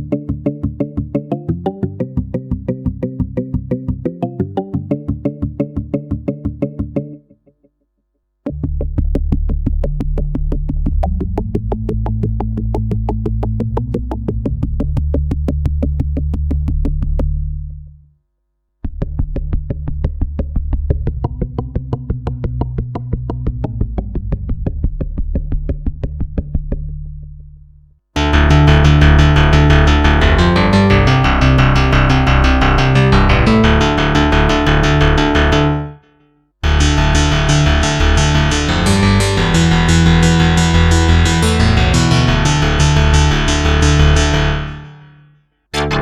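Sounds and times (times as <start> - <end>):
synth bass line: 28.2 - 36.0, 36.6 - 45.1, 45.8 - 46.0
synthesizer keyboard phrase: 28.2 - 36.0, 36.6 - 45.0, 45.8 - 46.0.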